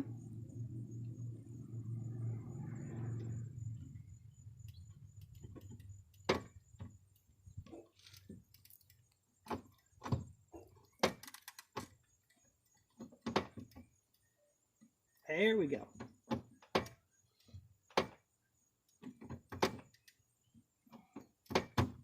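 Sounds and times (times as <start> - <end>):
low hum: 0.0 - 5.4.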